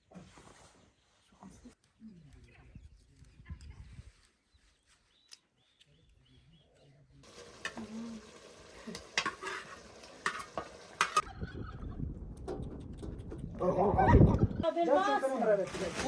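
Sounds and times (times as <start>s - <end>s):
food sizzling in a pan: 7.2s - 11.2s.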